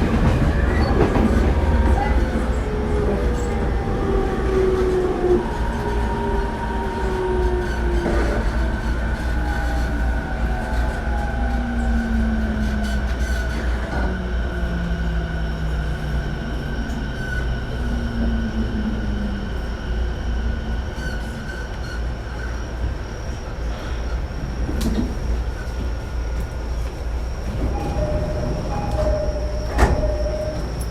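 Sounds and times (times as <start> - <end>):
wheels rumbling on rails: 0.0 - 30.9
electric train motor tones: 27.5 - 30.9.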